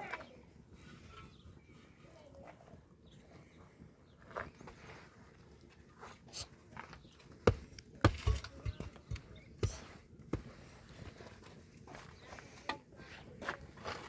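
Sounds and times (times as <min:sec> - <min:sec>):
irregular knocks and thumps: 0:07.4 - 0:10.6.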